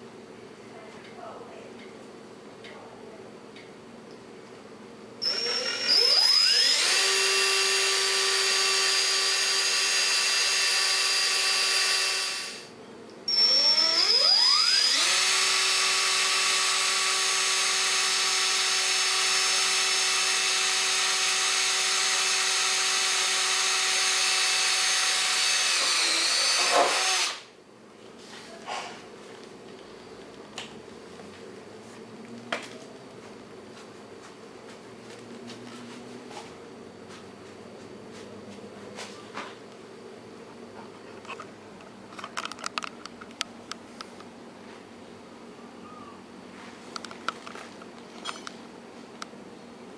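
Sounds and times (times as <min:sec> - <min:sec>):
cordless drill whining: 0:05.2 - 0:12.7, 0:13.3 - 0:27.5.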